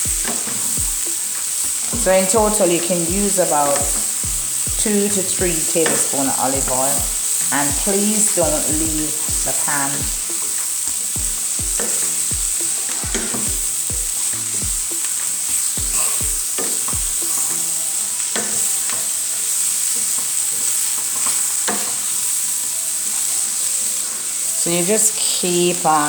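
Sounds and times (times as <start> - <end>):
spoon scraping and knocking a pan: 0.0 - 17.7
vegetables sizzling in oil: 0.0 - 26.0.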